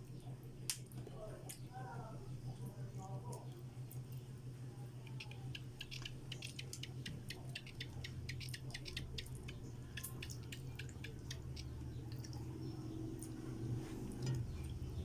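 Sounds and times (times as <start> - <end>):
steady low hum: 0.0 - 15.0
chewing and lip smacking: 5.0 - 14.8.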